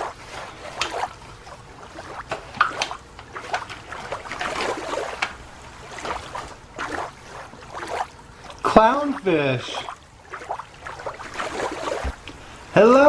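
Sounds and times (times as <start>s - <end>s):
water sloshing and splashing: 0.0s - 12.7s.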